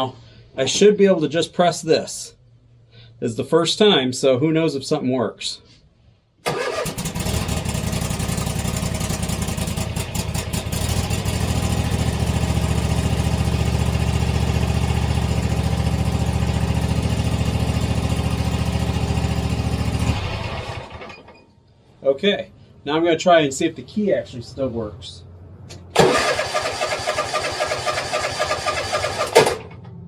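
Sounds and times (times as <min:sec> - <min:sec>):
riding mower engine running: 0:06.5 - 0:21.3, 0:25.9 - 0:30.0.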